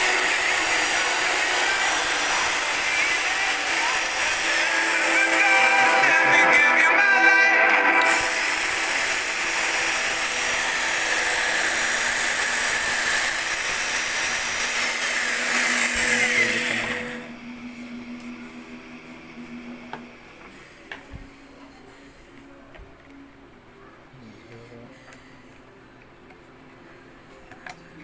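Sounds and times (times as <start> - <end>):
power tool motor running: 0.0 - 21.1.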